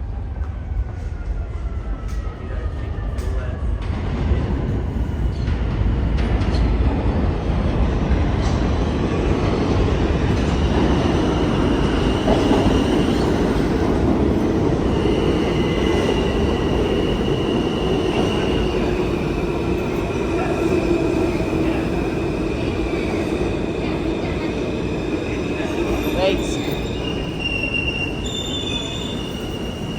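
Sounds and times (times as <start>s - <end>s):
subway train wheels rumbling: 0.0s - 29.9s
high squeal: 25.6s - 29.9s.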